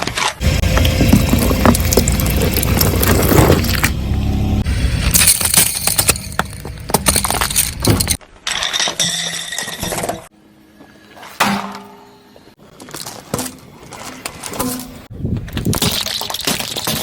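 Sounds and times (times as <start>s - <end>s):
objects crushed under car tyre: 0.0s - 4.0s, 5.0s - 9.0s.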